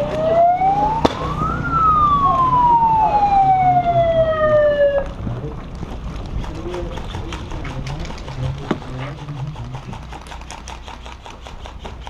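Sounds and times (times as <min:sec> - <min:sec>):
loud crack: 0:01.0 - 0:01.5
muffled voices: 0:06.4 - 0:10.1.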